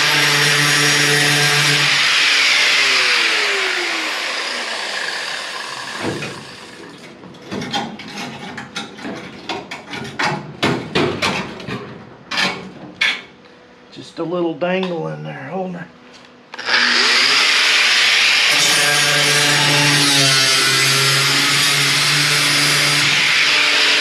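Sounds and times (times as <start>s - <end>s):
power cutting tool winding down: 0.0s - 6.8s, 16.5s - 24.0s.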